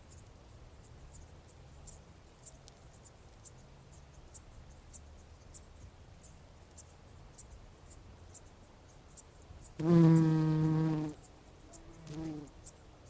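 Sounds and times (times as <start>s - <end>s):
bumblebee buzzing: 9.8s - 11.2s, 12.0s - 12.5s.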